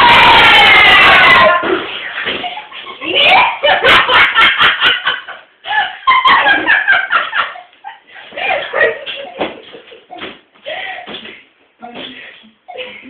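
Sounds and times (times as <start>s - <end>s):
people laughing: 2.3s - 10.3s.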